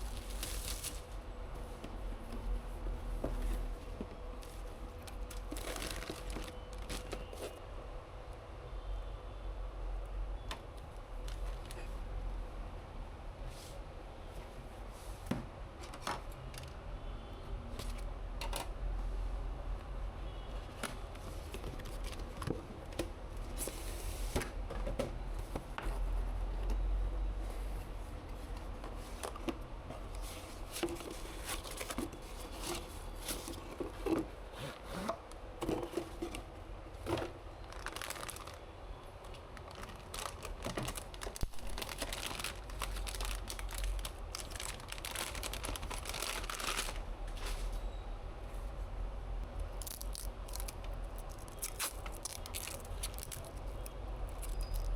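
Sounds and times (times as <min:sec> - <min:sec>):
plastic film crinkling and tearing: 0:00.0 - 0:01.2, 0:05.0 - 0:07.6, 0:37.6 - 0:47.1, 0:49.7 - 0:54.9.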